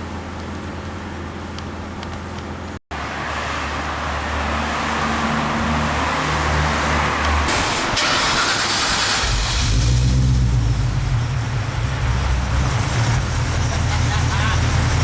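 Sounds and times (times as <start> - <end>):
car engine running: 9.8 - 15.0.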